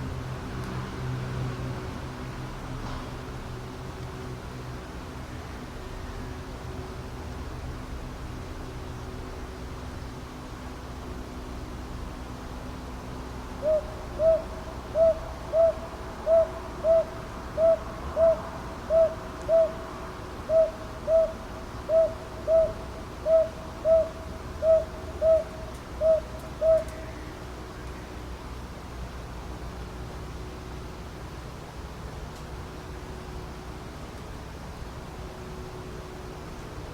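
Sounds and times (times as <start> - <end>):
steady background hiss: 0.0 - 36.9
owl two-note hoots: 13.6 - 19.8, 20.5 - 27.0.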